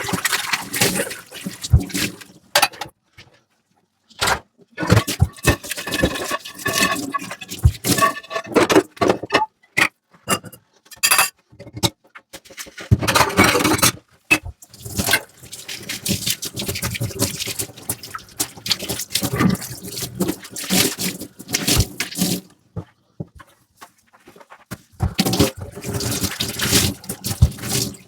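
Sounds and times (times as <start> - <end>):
water splashing and running: 0.0 - 2.5, 4.8 - 8.2, 14.5 - 28.0.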